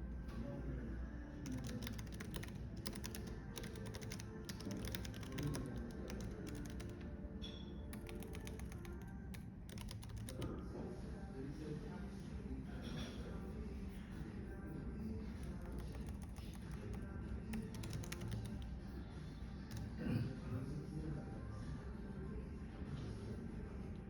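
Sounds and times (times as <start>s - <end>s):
background music: 0.0s - 11.6s
cafe background noise: 0.0s - 24.0s
computer keyboard typing: 1.4s - 10.6s, 15.2s - 19.0s, 19.6s - 20.0s.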